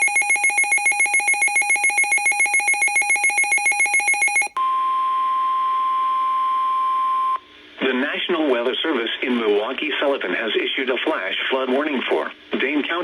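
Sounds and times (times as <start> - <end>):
steady alarm tone: 0.0 - 4.6.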